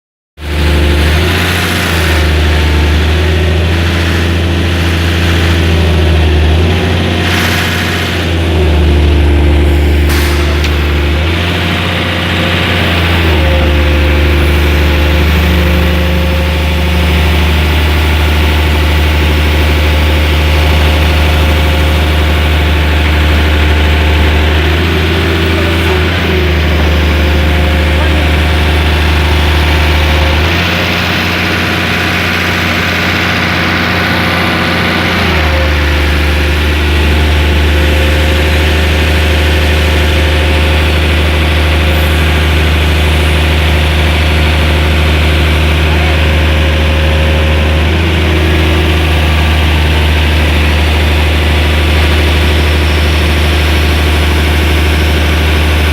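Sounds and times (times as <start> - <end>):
heavy machine engine running: 0.4 - 55.9.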